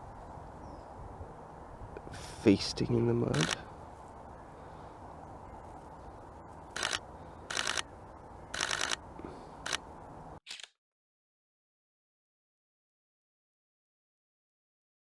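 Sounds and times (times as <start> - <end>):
faint outdoor background noise: 0.0 - 10.7
camera shutter clicking: 3.3 - 3.6, 6.8 - 7.9, 8.6 - 9.0, 9.6 - 10.7.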